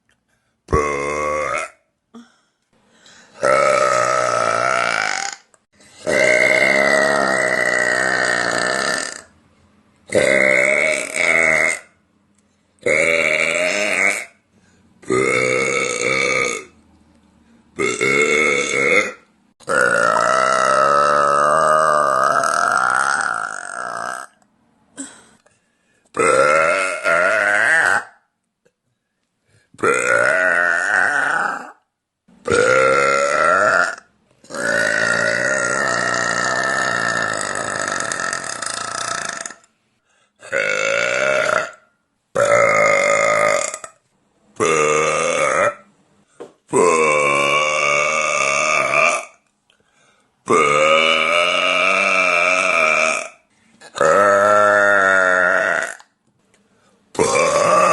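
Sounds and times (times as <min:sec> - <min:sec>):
woman burping loudly: 0:00.7 - 0:02.4, 0:03.3 - 0:09.4, 0:10.1 - 0:12.0, 0:12.8 - 0:14.4, 0:15.0 - 0:16.8, 0:17.8 - 0:24.4, 0:26.2 - 0:28.2, 0:29.8 - 0:39.7, 0:40.4 - 0:44.0, 0:44.6 - 0:45.9, 0:46.7 - 0:49.4, 0:50.5 - 0:56.1, 0:57.2 - 0:57.9.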